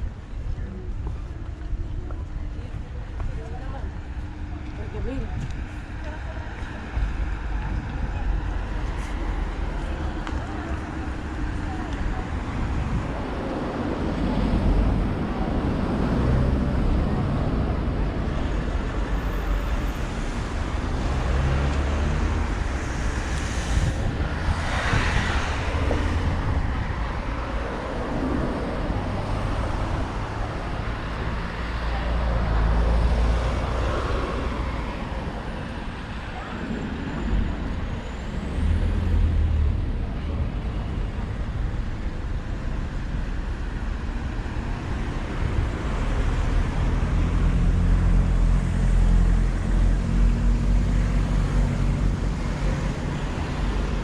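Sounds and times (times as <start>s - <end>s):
road traffic rumble: 0.0s - 54.0s
vehicle passing by: 20.3s - 40.4s.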